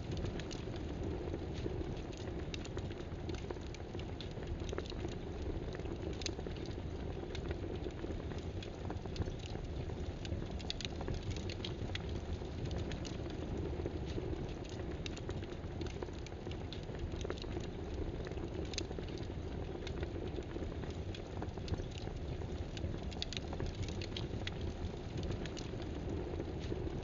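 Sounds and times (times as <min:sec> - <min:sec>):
rain-like hiss: 0:00.0 - 0:27.0
light irregular clicks: 0:01.6 - 0:26.8.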